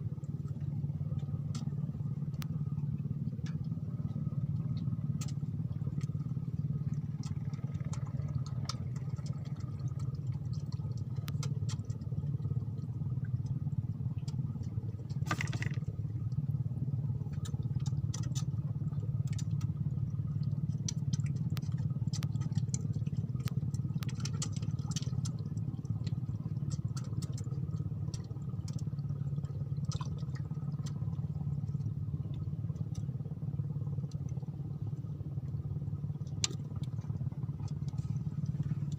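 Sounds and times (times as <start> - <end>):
light clicks and clatter: 0.1 - 38.9
small engine running: 15.2 - 15.9.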